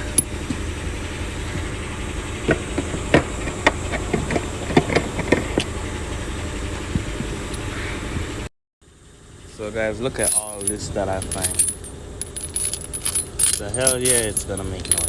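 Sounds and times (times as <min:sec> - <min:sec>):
steady low hum: 0:09.3 - 0:15.0
metal canisters clinking: 0:10.2 - 0:15.0.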